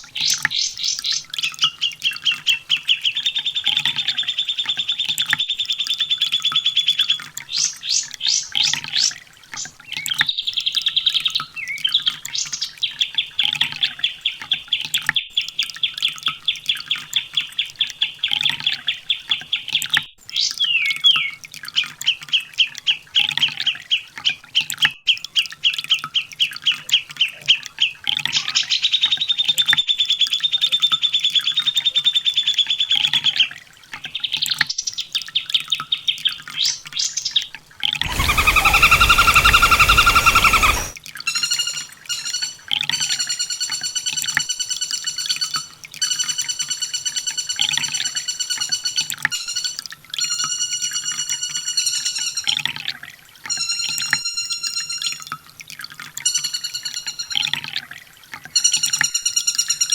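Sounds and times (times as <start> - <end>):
bird singing fast high trills: 38.0 - 41.0.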